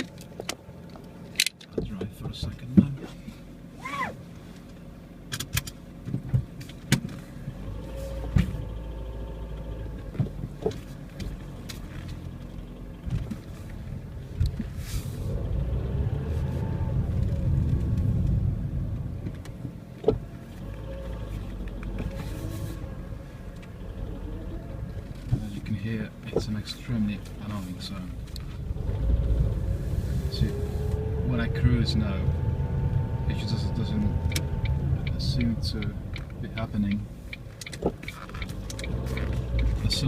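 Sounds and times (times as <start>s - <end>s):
car engine while driving: 0.0s - 40.0s
sharp clicks and knocks: 34.2s - 40.0s.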